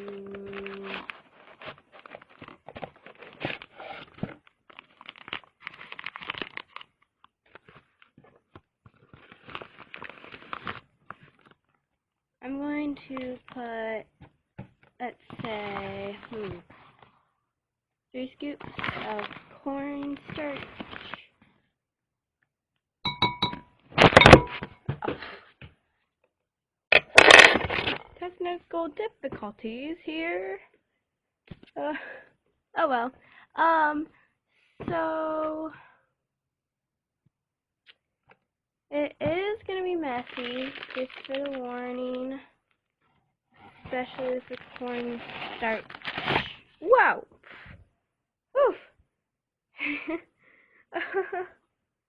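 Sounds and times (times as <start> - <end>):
crunching and crinkling handling noise: 0.0 - 11.9, 27.1 - 28.2, 39.7 - 46.7
scraping and rustling: 0.4 - 5.3
spoon clinking against bowl: 23.1 - 23.6.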